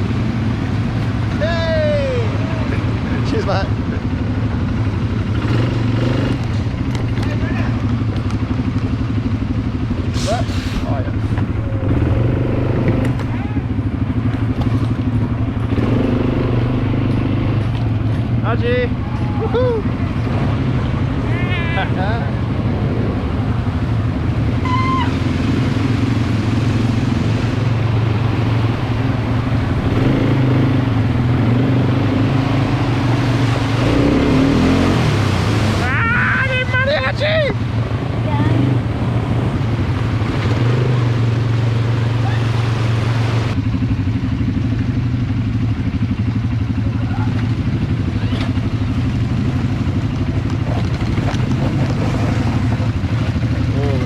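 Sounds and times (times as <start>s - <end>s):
quad bike engine droning: 0.0s - 54.0s.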